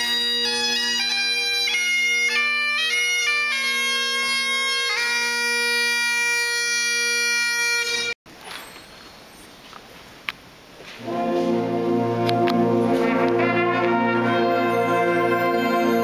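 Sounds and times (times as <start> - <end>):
bagpipes playing slow tune: 0.0 - 8.2.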